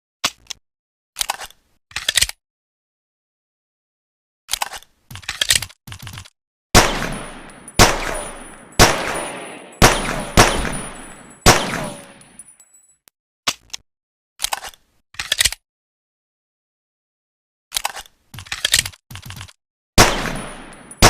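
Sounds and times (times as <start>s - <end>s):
pistol shots with echo: 6.8s - 12.4s, 20.0s - 21.0s.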